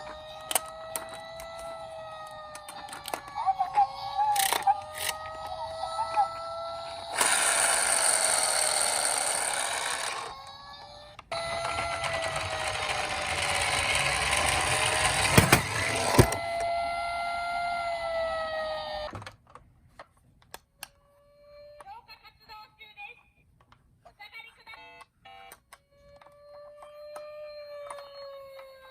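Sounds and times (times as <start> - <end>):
toy siren wavering tone: 0.0 - 19.2, 25.9 - 28.9
toy running rushing noise: 7.1 - 10.4, 11.4 - 16.3.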